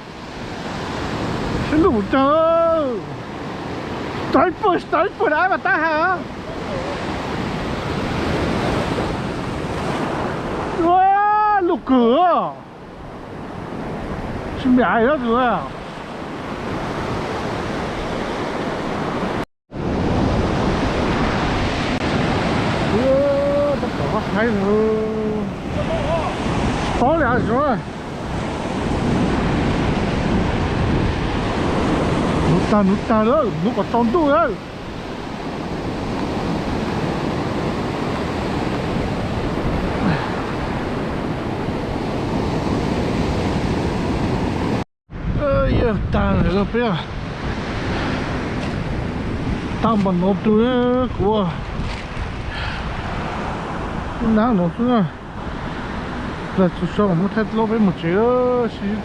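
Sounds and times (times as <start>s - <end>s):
beach surf: 0.0s - 59.0s
wind buffeting microphone: 12.7s - 58.1s.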